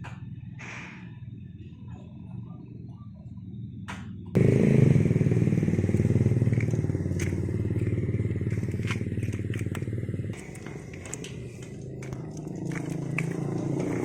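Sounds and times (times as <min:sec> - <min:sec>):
small engine running rough: 0:03.9 - 0:14.0.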